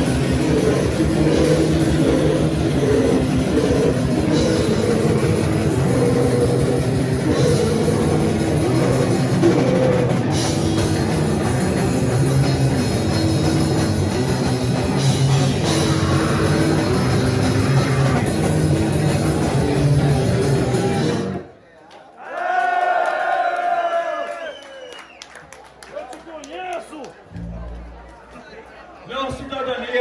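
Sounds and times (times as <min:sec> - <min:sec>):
live band playing heavy rock: 0:00.0 - 0:21.4.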